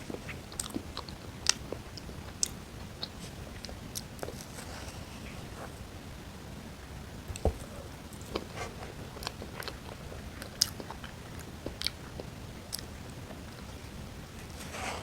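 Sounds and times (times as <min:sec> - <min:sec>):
biting and chewing: 0:00.0 - 0:06.0, 0:06.8 - 0:15.0
dull thump: 0:07.3 - 0:07.8.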